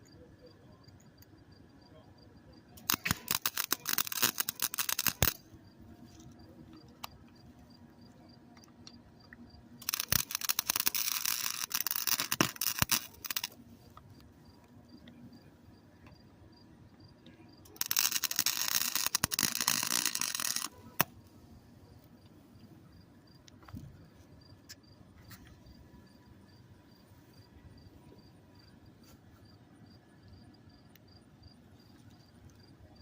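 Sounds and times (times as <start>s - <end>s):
welder arc crackling: 2.8s - 5.5s, 9.8s - 13.6s, 17.6s - 21.2s.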